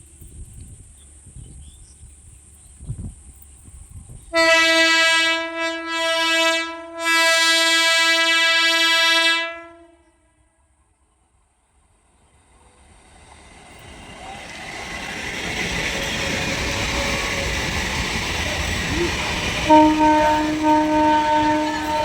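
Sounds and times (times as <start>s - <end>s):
low railway rumble: 0.0s - 22.0s
train horn blast: 4.3s - 10.6s, 18.9s - 22.0s.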